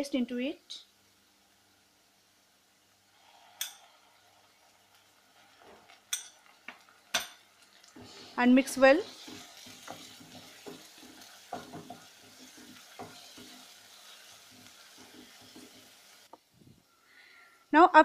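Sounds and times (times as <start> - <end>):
food sizzling in hot oil: 0.0 - 16.3
spatula scraping a pan: 7.9 - 16.3.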